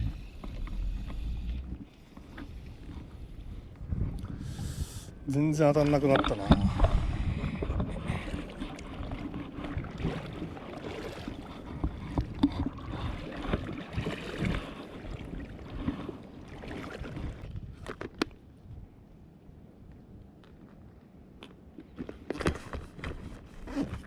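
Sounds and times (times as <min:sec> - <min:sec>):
water sloshing and lapping: 0:00.0 - 0:18.6, 0:21.4 - 0:24.0
wind rumble on microphone: 0:00.0 - 0:21.2.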